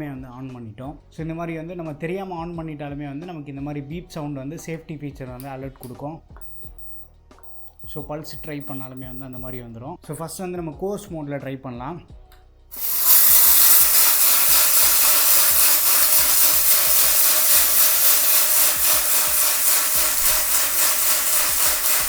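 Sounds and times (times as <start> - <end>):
mixer grinder grinding spices: 6.4 - 9.6, 12.8 - 22.0
hard pieces rattling in jar: 12.8 - 22.0.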